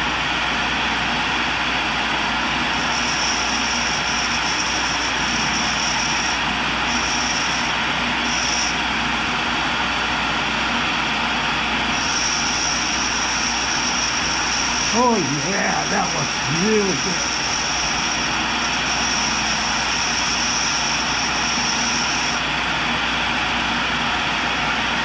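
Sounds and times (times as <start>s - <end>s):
grinder hiss: 2.7s - 8.8s, 11.9s - 22.4s
high-pitched whine: 2.7s - 8.9s, 11.9s - 22.4s.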